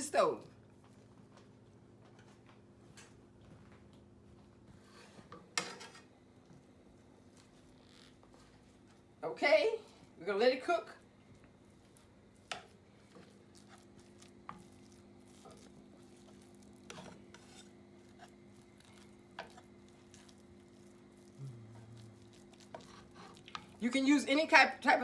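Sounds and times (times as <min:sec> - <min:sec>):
low steady hum: 0:05.6 - 0:24.9.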